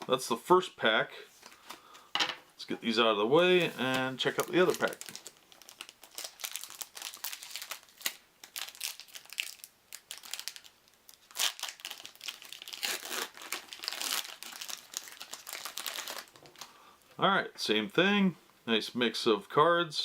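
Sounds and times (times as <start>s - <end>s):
wrapper crinkling and tearing: 3.6s - 16.7s.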